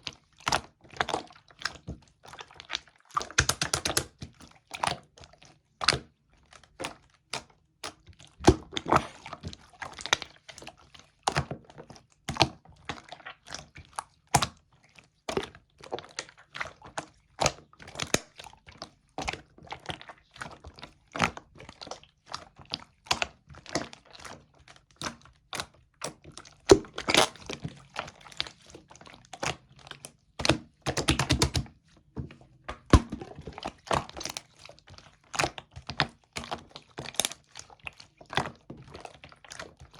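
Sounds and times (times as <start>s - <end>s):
slime squished by hand: 0.4s - 5.2s, 15.2s - 39.9s.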